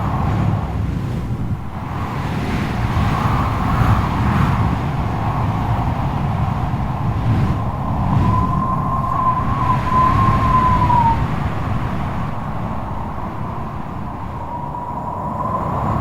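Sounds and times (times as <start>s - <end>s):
strong wind gusting: 0.0s - 16.0s.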